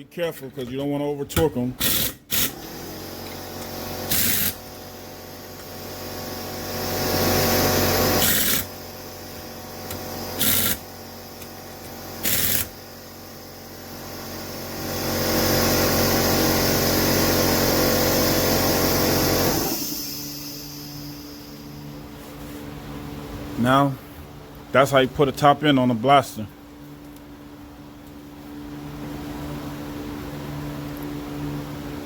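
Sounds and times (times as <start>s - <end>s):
impact gun motor whining: 1.8s - 21.9s.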